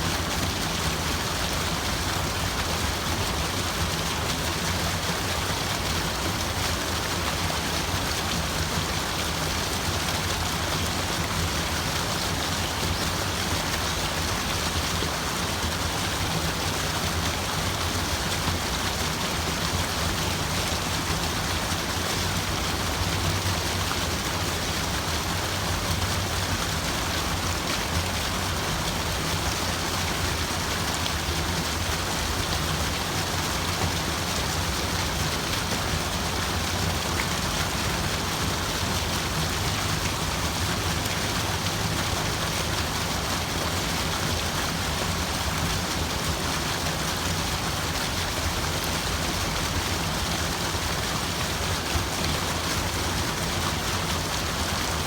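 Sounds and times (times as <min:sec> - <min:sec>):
running water rushing: 0:00.0 - 0:55.0.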